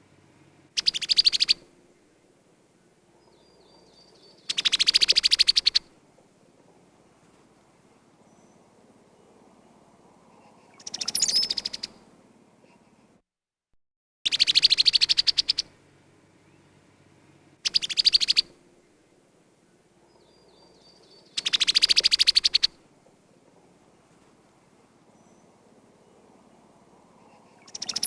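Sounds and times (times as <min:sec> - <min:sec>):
bird rattling chatter calls: 0:03.3 - 0:05.9, 0:20.1 - 0:22.8, 0:27.2 - 0:28.0.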